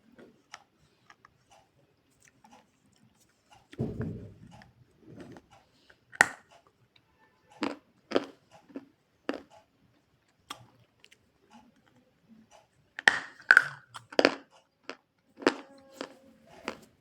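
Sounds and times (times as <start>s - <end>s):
clay crunching between teeth: 5.4s - 6.7s, 7.5s - 16.9s.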